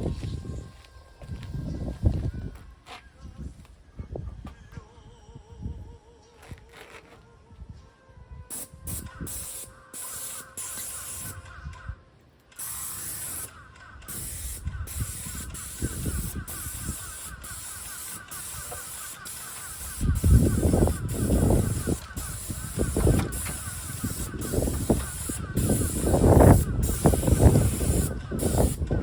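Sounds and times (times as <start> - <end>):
paint sprayer hissing: 8.5 - 11.5, 12.5 - 29.0.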